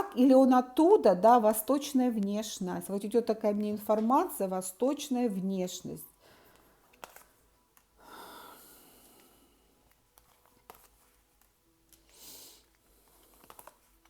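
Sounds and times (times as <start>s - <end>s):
soft breath: 6.1s - 7.0s, 8.0s - 9.9s.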